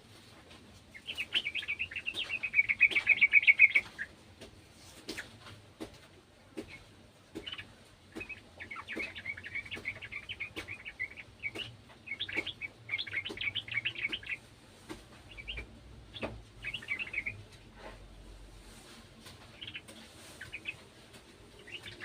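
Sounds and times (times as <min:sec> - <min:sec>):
bird chattering: 0:01.0 - 0:04.1, 0:07.4 - 0:14.4, 0:15.3 - 0:17.4.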